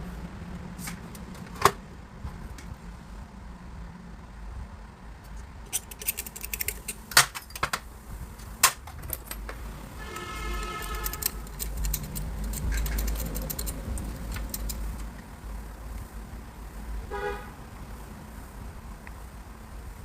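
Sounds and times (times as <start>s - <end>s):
metallic clicks and clinks: 5.7s - 7.8s, 8.4s - 9.6s, 10.2s - 15.1s.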